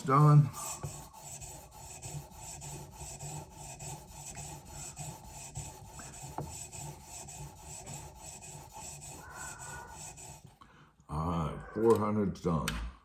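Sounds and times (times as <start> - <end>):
knife rasping on sharpening stone: 0.4 - 10.5.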